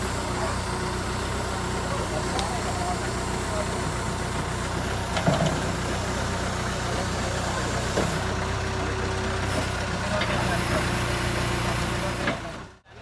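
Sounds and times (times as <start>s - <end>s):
diesel engine idling: 0.0s - 13.0s
short clunks: 4.5s - 6.0s.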